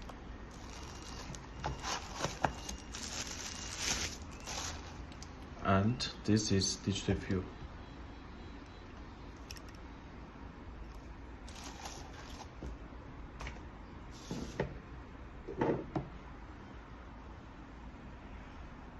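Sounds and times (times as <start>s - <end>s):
handling rustles and clicks: 0.0s - 5.3s
faint low hum: 0.0s - 18.9s.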